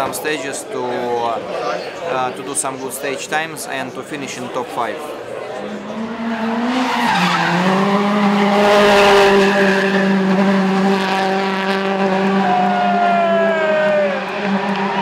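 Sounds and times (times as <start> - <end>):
car engine at high revs: 5.6 - 13.0.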